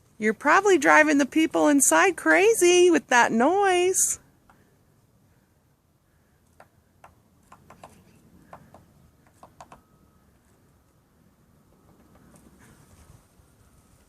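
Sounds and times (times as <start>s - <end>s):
woodpecker tapping on siding: 6.4s - 9.8s, 11.6s - 12.7s.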